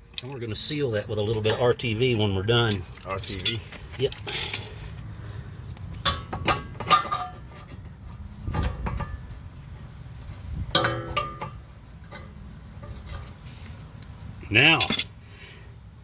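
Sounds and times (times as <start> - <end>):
metal tools clinking: 0.1 - 4.9, 14.6 - 15.2.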